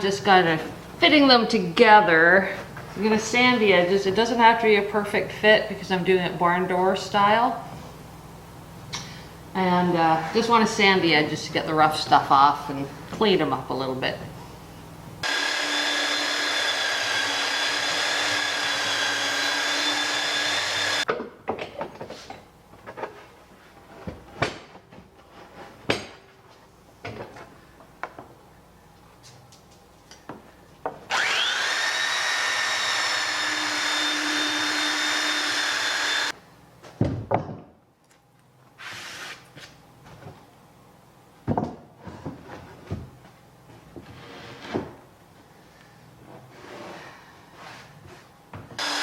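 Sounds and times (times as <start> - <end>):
electric sander on wood: 15.2 - 21.0, 31.1 - 36.4, 48.8 - 49.0.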